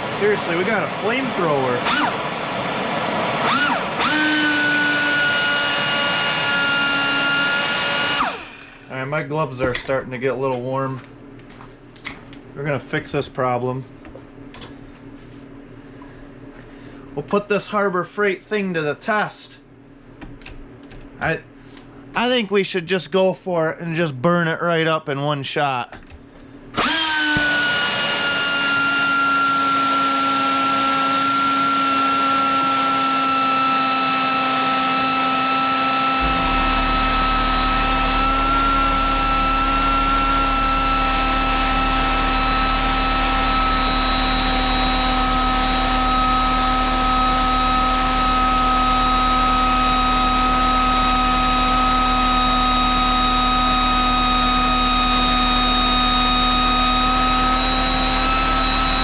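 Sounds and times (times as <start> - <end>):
pneumatic angle grinder whine: 0.0 - 9.0, 26.8 - 59.0.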